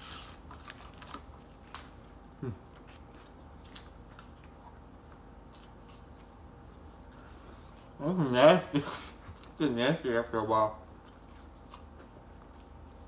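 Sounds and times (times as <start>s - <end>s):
person chewing food: 0.0s - 8.0s, 10.9s - 13.0s.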